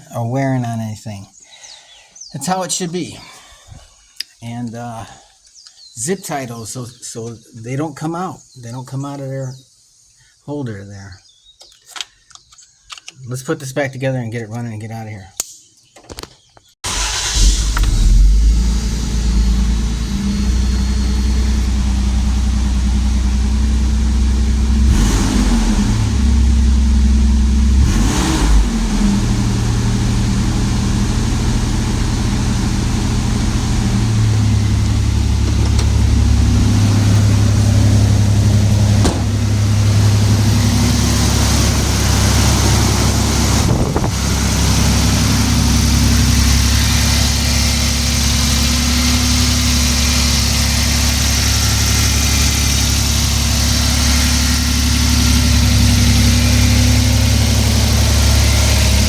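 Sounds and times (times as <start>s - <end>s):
pickup engine revving and idling: 16.9s - 59.0s.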